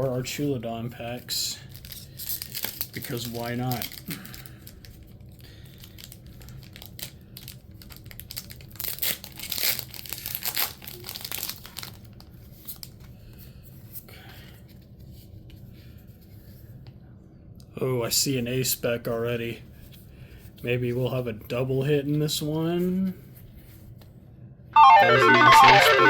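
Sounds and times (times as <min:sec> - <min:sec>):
foil wrapper tearing: 0:01.7 - 0:12.2
wrapper crinkling: 0:01.7 - 0:13.0.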